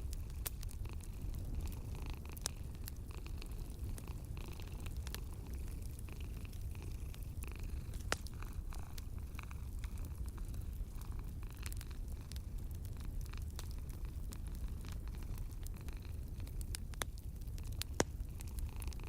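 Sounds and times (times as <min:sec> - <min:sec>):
cat purring: 0:00.0 - 0:19.0
wood fire crackling and popping: 0:00.0 - 0:19.0.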